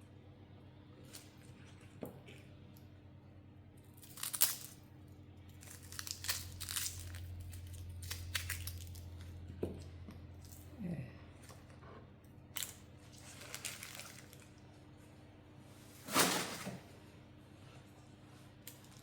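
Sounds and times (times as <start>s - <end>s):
low steady hum: 0.0s - 19.0s
onion skin crackling and tearing: 3.8s - 4.9s, 5.5s - 9.4s, 12.5s - 14.6s.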